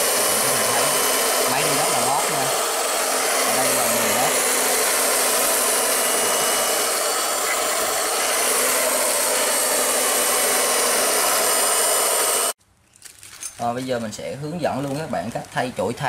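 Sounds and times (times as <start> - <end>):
electric cloth cutter running: 0.0 - 12.6.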